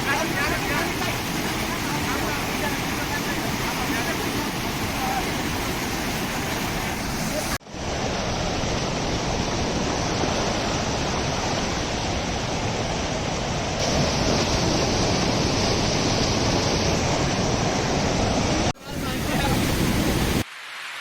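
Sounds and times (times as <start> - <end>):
fast-flowing stream water: 0.0 - 8.2, 18.6 - 21.0.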